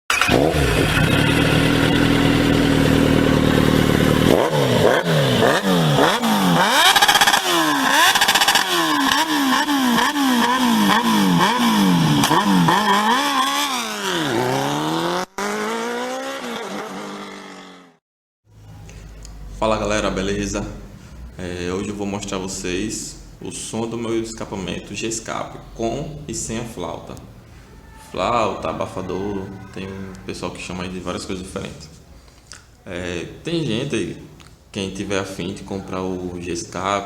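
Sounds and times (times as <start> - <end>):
motorcycle engine revving: 0.1 - 18.0.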